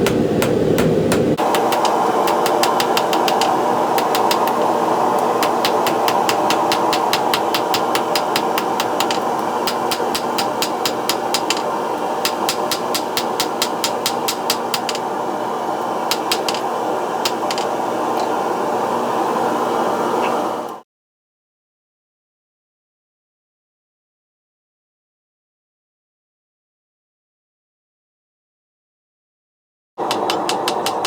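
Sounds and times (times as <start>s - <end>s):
hammer striking steel on anvil: 0.0s - 15.1s, 16.1s - 17.8s
forge burner rushing: 0.0s - 20.8s.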